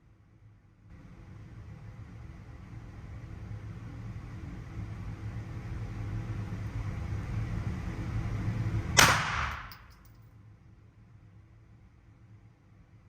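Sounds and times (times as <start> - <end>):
steady low hum: 0.0 - 13.0
gunshot with echo: 9.0 - 9.9.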